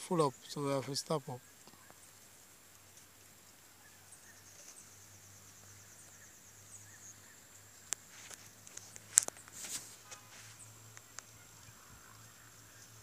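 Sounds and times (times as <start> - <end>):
insect trill: 0.0 - 13.0
short rustle: 7.9 - 10.8.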